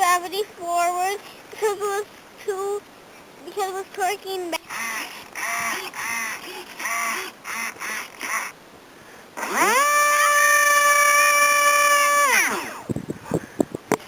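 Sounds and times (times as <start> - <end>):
short harsh calls: 4.5 - 13.7
electric motor and propeller whine: 4.6 - 8.6, 9.4 - 14.0.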